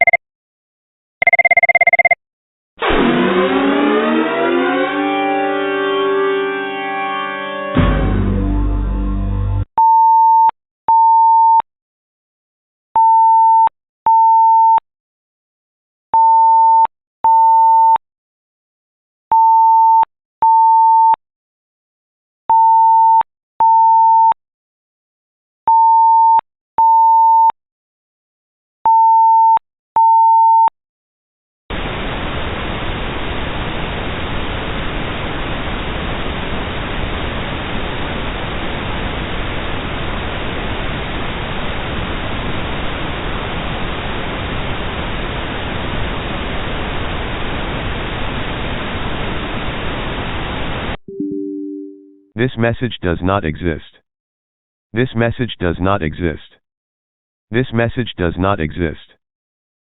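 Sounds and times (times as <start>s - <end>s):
electronic alert beeps: 0.0s - 0.2s, 1.2s - 2.2s
low buzzy noise: 2.8s - 9.7s
static hiss: 31.7s - 51.0s.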